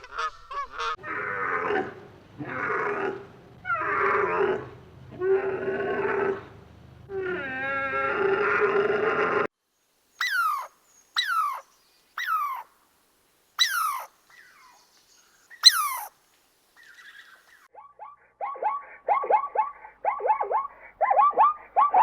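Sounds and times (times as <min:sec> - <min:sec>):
steady animal call: 0:13.6 - 0:14.8, 0:15.6 - 0:16.1.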